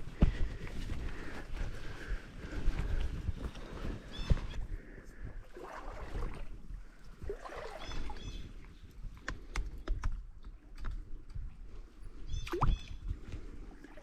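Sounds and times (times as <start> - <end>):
water sloshing and gurgling: 2.5 - 9.6, 12.3 - 14.0.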